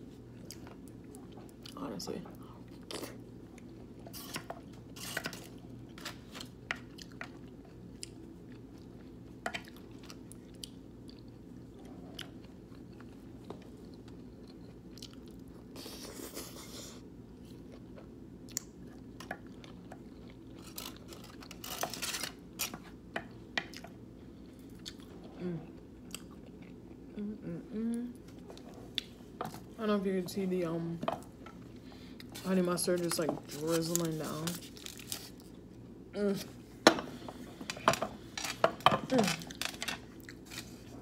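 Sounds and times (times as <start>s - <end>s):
steady low hum: 0.0s - 41.0s
person chewing sandwich: 2.4s - 29.7s, 39.5s - 41.0s.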